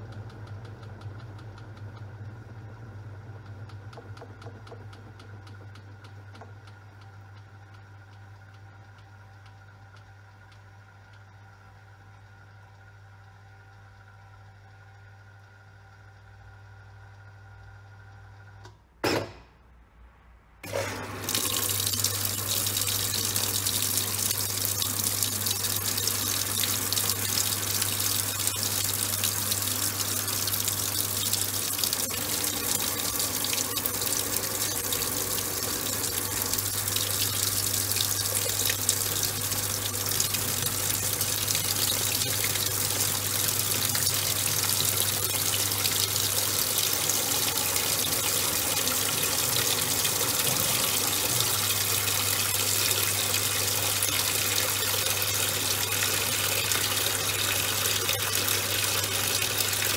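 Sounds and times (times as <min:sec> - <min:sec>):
washing machine low hum: 0:00.0 - 0:19.0, 0:20.5 - 0:59.9
water pouring into tub: 0:20.7 - 0:59.9.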